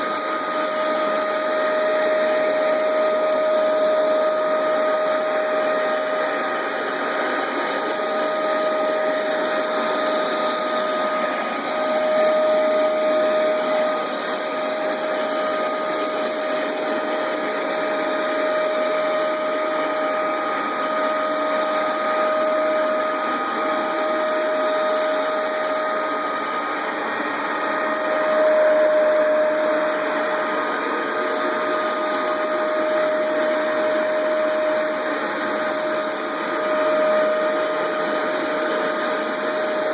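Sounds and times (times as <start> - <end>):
carpet cleaner motor whine: 0.0 - 39.9.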